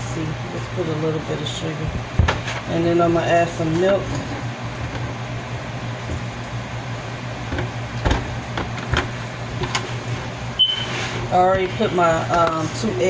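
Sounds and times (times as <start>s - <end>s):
kitchen background hum: 0.0s - 13.0s
containers knocking and clattering: 1.8s - 10.4s.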